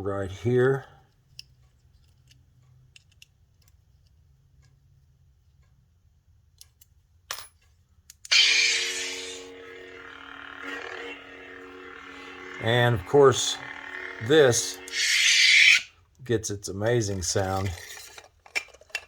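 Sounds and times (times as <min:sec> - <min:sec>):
metallic clicks and taps: 0:01.3 - 0:04.8
steady low hum: 0:08.3 - 0:15.9.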